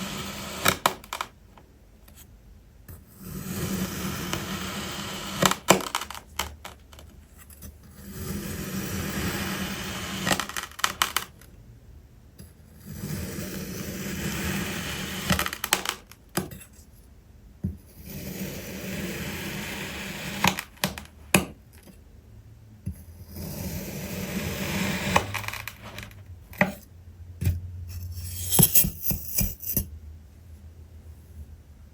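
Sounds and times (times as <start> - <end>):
tool scraping kinetic sand: 0.0 - 1.3, 3.1 - 11.2, 12.7 - 16.9, 17.9 - 21.4, 23.2 - 26.9, 27.9 - 29.8.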